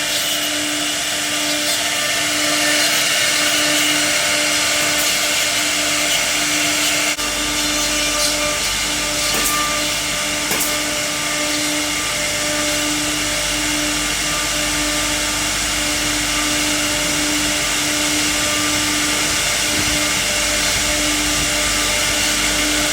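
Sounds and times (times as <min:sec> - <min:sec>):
router spindle whine carving wood: 0:00.0 - 0:22.9.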